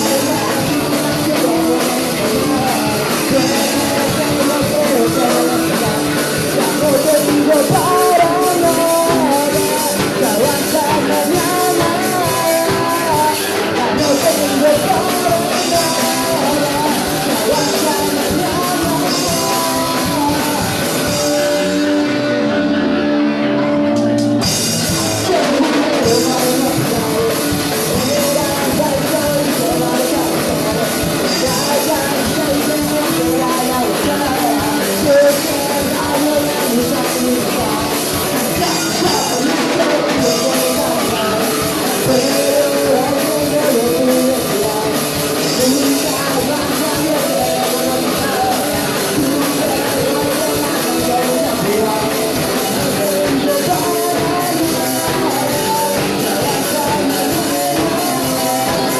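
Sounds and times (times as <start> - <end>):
drum kit: 0.0 - 58.9
guitar: 0.0 - 58.9
person singing: 0.0 - 58.9.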